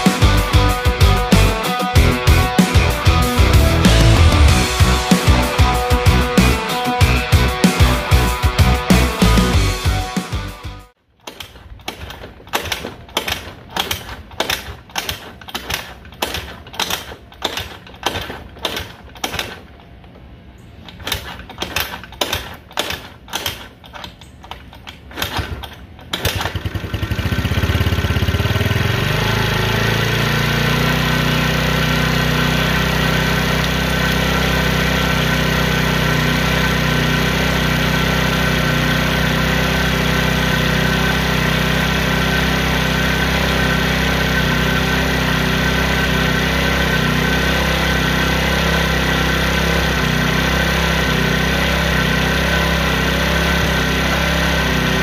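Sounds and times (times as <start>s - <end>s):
sharp regular hits: 0.0s - 11.0s
scooter engine idling: 0.0s - 55.0s.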